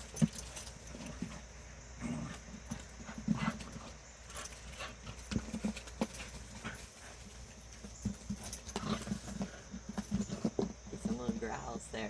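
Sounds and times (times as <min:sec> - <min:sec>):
puppy growling and grunting: 0:02.0 - 0:02.5.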